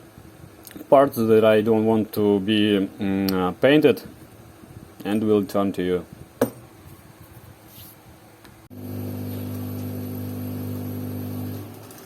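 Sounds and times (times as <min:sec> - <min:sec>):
steady machine hum: 0:08.2 - 0:11.8.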